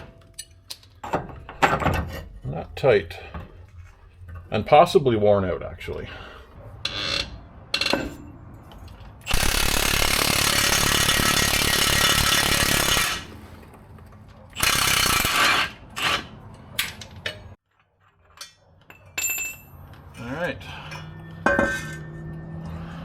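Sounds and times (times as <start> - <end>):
impact wrench bursts: 9.2 - 13.5, 14.6 - 16.3
metallic clinks of tools: 18.4 - 20.1.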